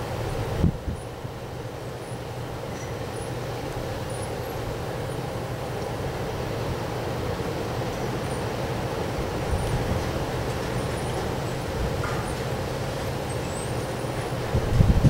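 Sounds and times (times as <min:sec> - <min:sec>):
strong wind blowing: 0:00.0 - 0:01.1, 0:14.4 - 0:15.0
wind buffeting microphone: 0:00.0 - 0:01.3, 0:09.3 - 0:15.0.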